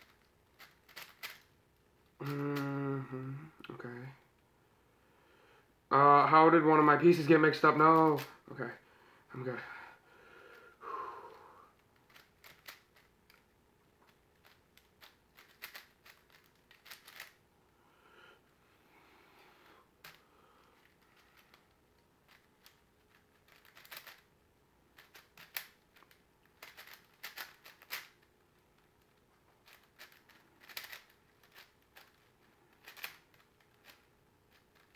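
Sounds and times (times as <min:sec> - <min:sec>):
plastic puzzle cube clicking: 0:00.0 - 0:01.5, 0:12.0 - 0:13.4, 0:14.1 - 0:17.4, 0:20.0 - 0:24.3, 0:25.0 - 0:28.2, 0:28.8 - 0:34.9.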